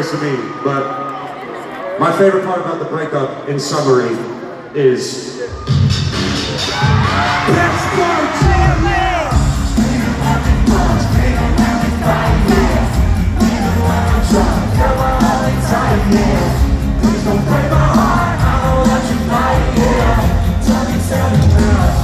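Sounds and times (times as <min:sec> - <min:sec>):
drum beat: 0:05.7 - 0:22.0
person singing: 0:07.4 - 0:22.0
live rock band playing: 0:09.3 - 0:22.0.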